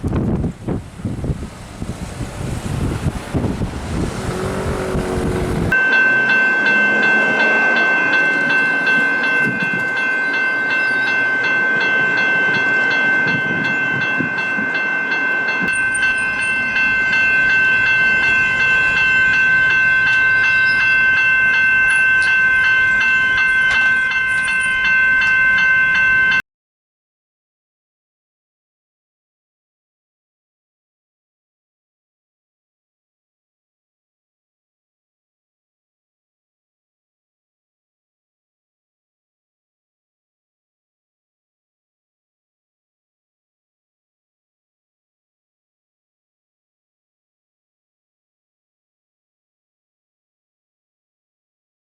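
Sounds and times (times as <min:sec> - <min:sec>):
rushing noise: 0:00.0 - 0:08.8
train noise: 0:00.0 - 0:26.1
level crossing bell ringing: 0:05.7 - 0:26.4.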